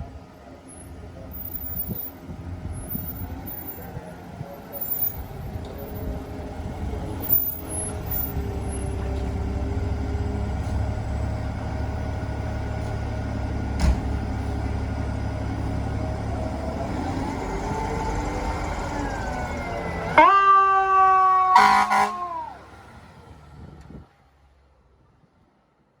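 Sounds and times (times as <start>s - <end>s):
diesel engine rumble: 0.0s - 25.6s
air horn blast: 20.2s - 22.6s.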